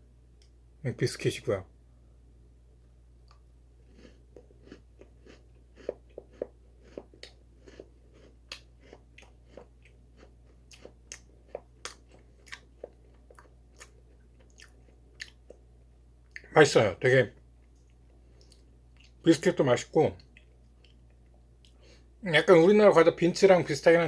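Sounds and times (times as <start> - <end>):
crunching and chewing biscuit: 3.3 - 16.5.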